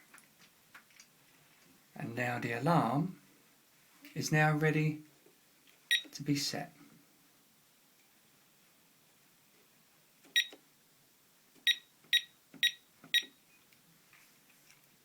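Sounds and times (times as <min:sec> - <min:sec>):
keypad beeps: 0:05.9 - 0:06.1, 0:10.3 - 0:10.6, 0:11.7 - 0:13.3.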